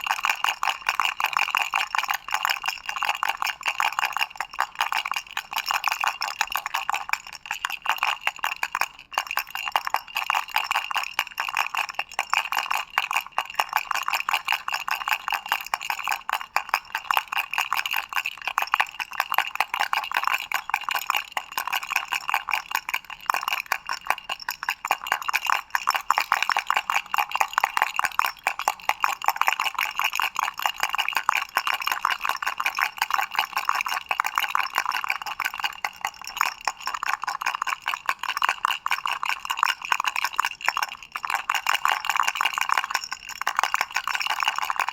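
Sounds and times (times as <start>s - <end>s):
baby rattle shaking: 0.0s - 44.9s.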